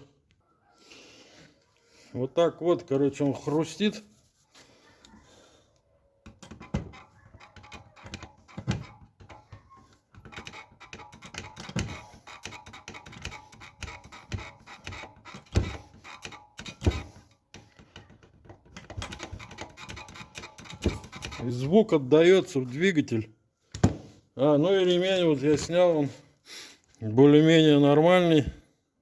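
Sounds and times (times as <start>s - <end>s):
bearing crunching and clicking: 6.2s - 22.9s, 24.8s - 25.9s.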